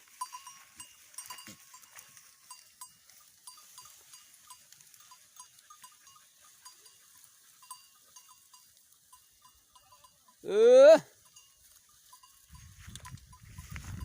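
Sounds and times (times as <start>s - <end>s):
goat bells clinking: 0.0s - 14.0s.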